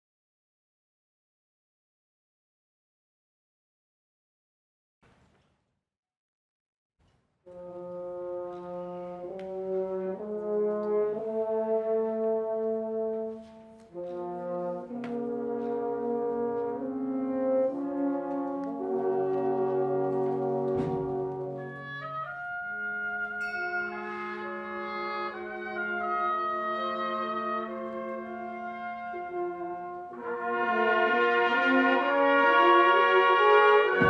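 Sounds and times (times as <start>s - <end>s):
higher wind instruments: 7.5s - 34.0s
brass section playing chords: 7.6s - 34.0s.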